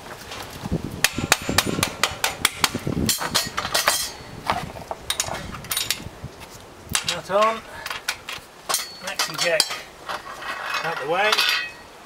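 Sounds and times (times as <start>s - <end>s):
metal scraping slide: 8.8s - 11.8s.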